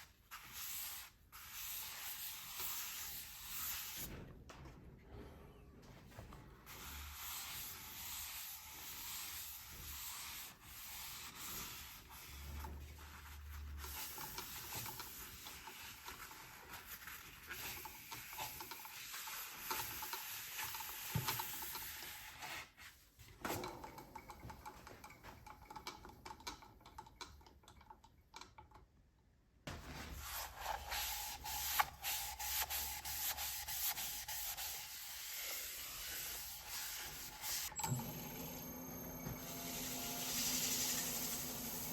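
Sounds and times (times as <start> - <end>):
sandpaper on spinning wood: 30.2 - 37.7.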